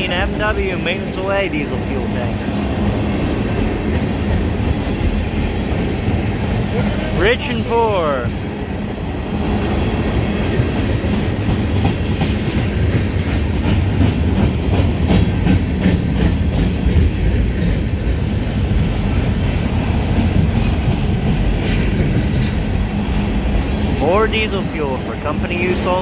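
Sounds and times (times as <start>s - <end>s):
train wheels rumbling on rail: 0.0s - 26.0s
wheels clicking over rail joints: 9.0s - 25.0s.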